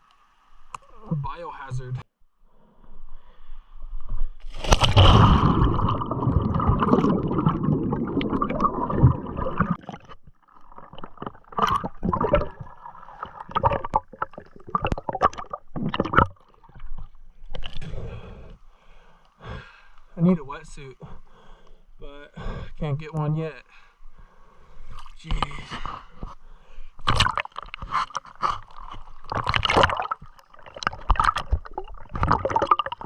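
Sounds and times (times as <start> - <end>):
river water splashing and gurgling: 4.4 - 17.0, 29.2 - 33.0.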